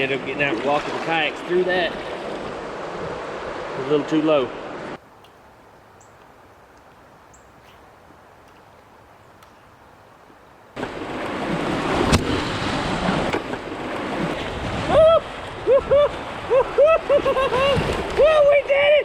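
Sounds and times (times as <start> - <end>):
faint river hiss: 0.0 - 11.0.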